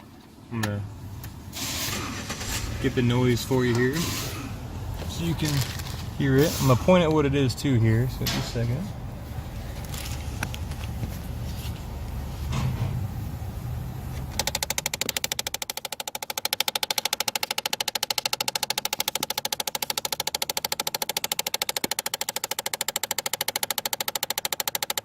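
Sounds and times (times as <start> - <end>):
air door actuator ticking rapidly: 14.4 - 25.0.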